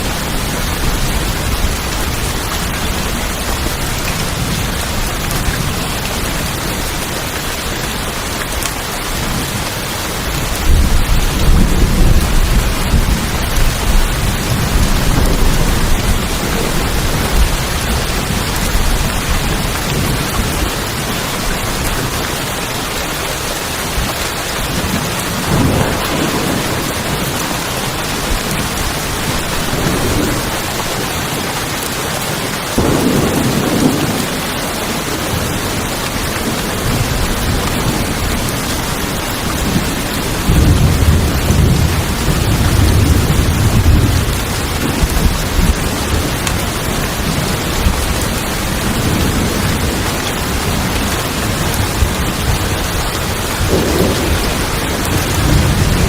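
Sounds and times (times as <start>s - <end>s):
heavy rain on tin roofs: 0.0s - 56.0s
thunder rolling: 10.6s - 20.8s, 24.8s - 30.6s, 47.2s - 56.0s.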